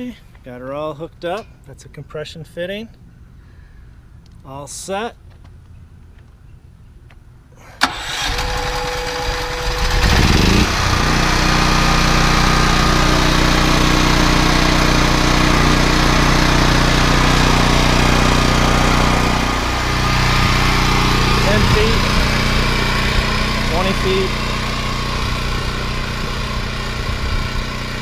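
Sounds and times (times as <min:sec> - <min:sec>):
generator starter click: 0:07.8 - 0:09.5
generator engine cranking: 0:07.8 - 0:28.0
generator engine running: 0:07.8 - 0:28.0.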